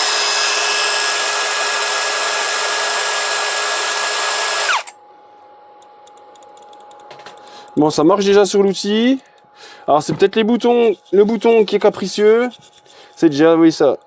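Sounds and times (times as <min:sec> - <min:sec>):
power tool motor whining: 0:00.0 - 0:04.9.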